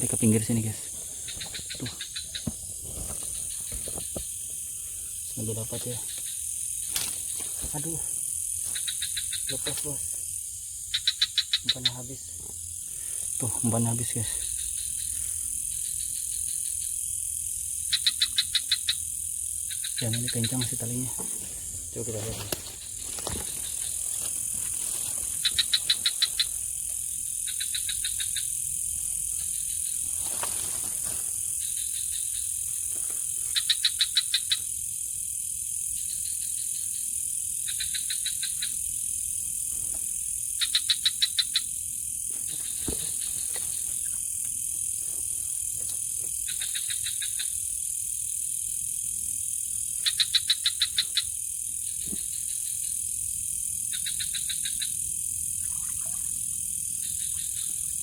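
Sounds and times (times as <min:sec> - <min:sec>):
frogs calling with clicking pulses: 0:00.0 - 0:58.0
night insects droning: 0:00.0 - 0:58.0.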